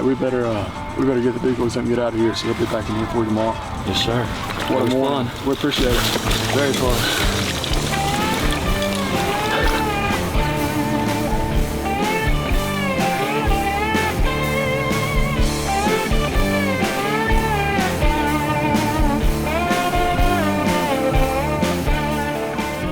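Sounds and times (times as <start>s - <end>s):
guitar-led rock music: 5.9s - 22.9s.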